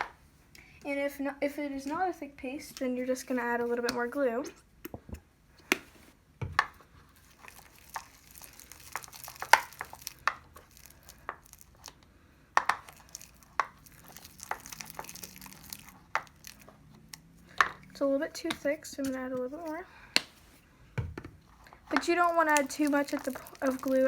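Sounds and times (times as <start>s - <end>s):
sticky slime stirring clicks: 12.6s - 19.2s.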